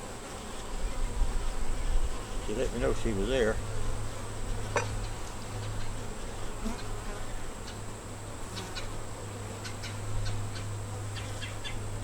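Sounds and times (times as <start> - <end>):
bees buzzing: 0.0 - 12.0.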